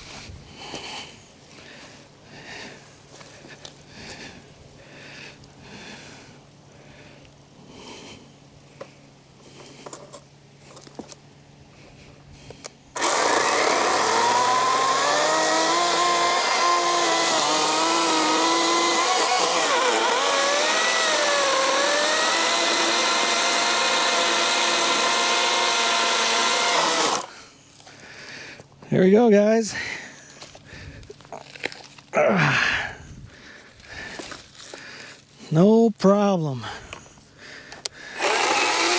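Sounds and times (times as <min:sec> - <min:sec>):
chainsaw cutting through log: 0:13.0 - 0:27.4, 0:38.1 - 0:38.9
electric chainsaw whining: 0:13.0 - 0:27.4, 0:38.2 - 0:38.9.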